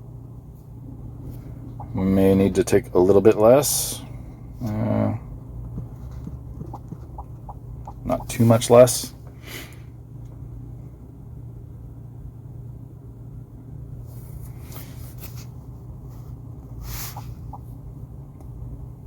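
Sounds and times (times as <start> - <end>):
low room hum: 0.0 - 19.0
short faint hissing: 16.2 - 17.6.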